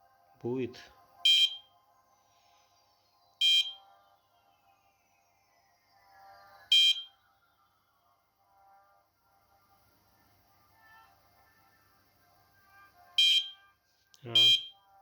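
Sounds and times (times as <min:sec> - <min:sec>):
high-pitched electronic beeps: 0:01.3 - 0:01.7, 0:03.4 - 0:03.8, 0:06.7 - 0:07.2, 0:13.2 - 0:13.6, 0:14.3 - 0:14.8.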